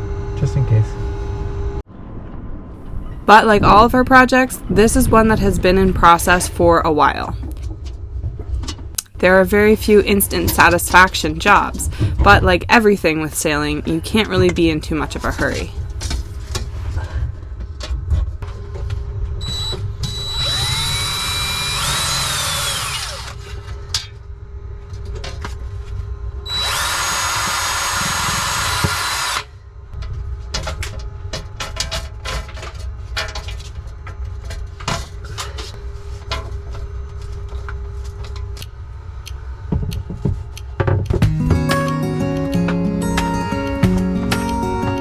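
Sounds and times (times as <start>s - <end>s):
power drill whining: 19.4s - 23.4s, 26.5s - 29.5s.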